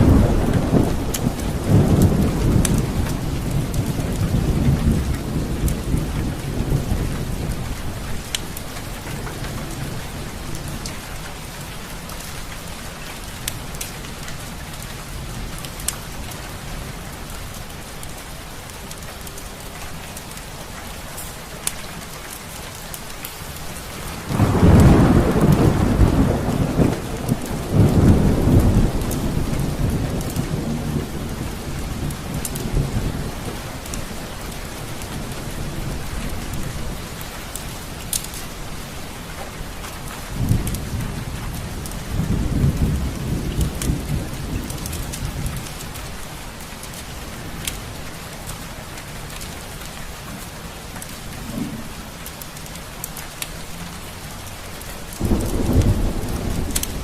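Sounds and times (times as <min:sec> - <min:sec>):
rolling thunder: 0:00.0 - 0:11.2, 0:23.5 - 0:48.6, 0:49.3 - 0:52.2, 0:55.1 - 0:57.0
steady rain: 0:00.0 - 0:57.0
fireplace crackles: 0:17.2 - 0:24.3.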